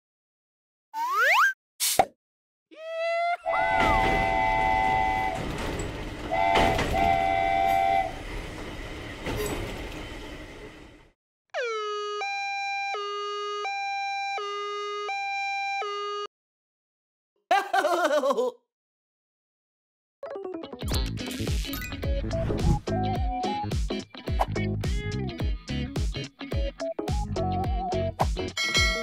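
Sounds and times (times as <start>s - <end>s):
train horn blasts: 3.5s - 8.4s
train rumbling: 3.5s - 11.2s.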